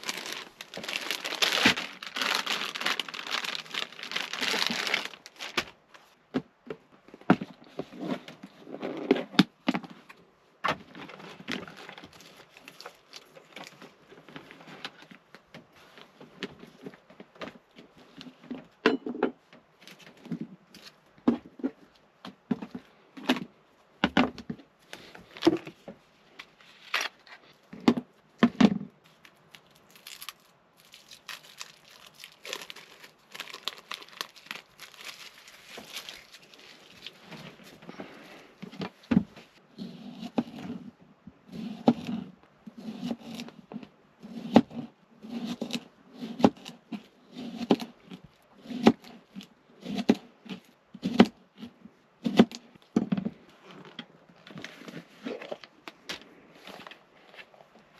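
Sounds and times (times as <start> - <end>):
plastic packaging crinkling and tearing: 0.0 - 6.1, 11.0 - 15.1, 29.1 - 38.3.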